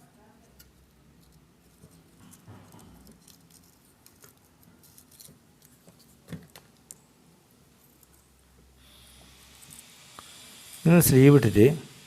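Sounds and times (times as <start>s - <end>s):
hands handling wires: 0.5s - 7.1s.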